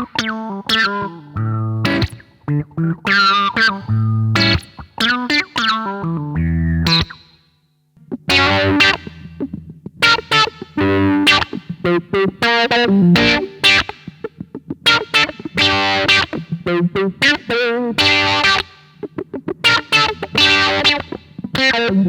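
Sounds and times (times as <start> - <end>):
distorted electric guitar: 0.0 - 7.4, 8.0 - 22.0.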